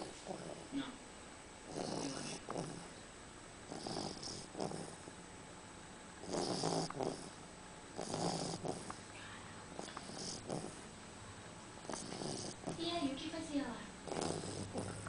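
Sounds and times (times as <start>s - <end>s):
dog snoring: 0.0s - 0.9s, 1.6s - 3.0s, 3.7s - 5.1s, 6.2s - 9.1s, 9.7s - 10.9s, 11.8s - 13.0s, 14.0s - 15.0s.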